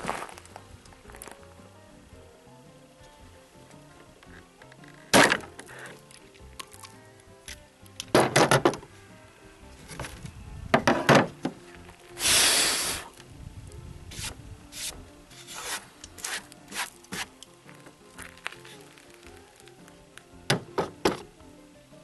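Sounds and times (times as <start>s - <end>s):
faint background music: 0.0s - 22.0s
scraping rub: 14.1s - 17.3s.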